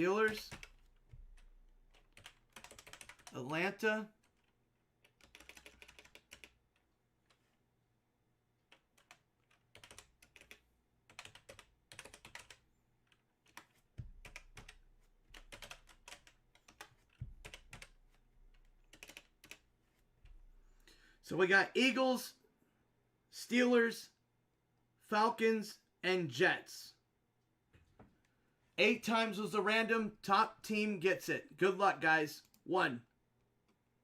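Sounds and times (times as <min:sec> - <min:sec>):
faint keyboard typing: 0:00.0 - 0:07.6, 0:08.6 - 0:20.5.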